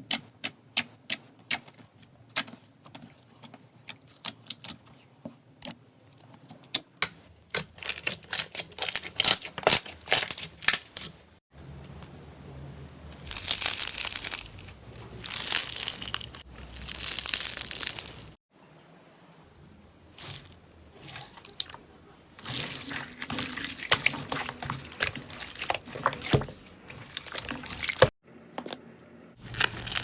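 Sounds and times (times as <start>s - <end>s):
slime crunchy squishing: 7.5s - 11.1s, 13.2s - 18.4s, 20.1s - 21.8s, 22.4s - 28.2s, 29.4s - 30.0s.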